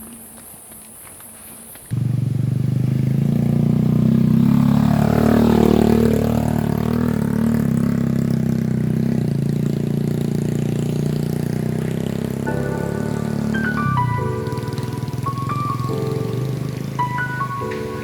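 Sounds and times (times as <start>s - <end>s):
motorcycle engine running: 1.9s - 18.0s
passing engine: 1.9s - 18.0s.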